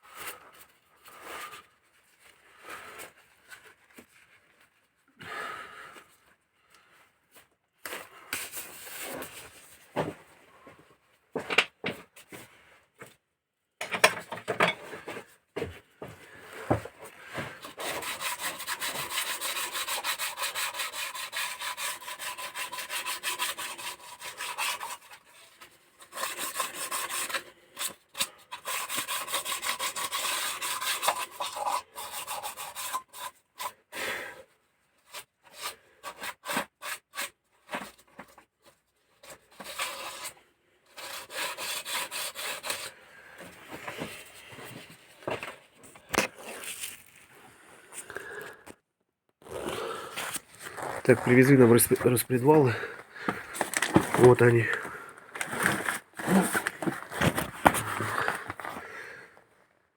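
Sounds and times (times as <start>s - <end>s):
scraping on hard surface: 49.4s - 59.4s.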